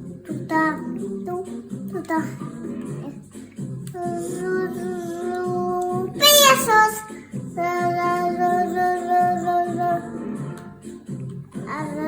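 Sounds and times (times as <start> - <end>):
child singing long notes: 3.9 - 10.1.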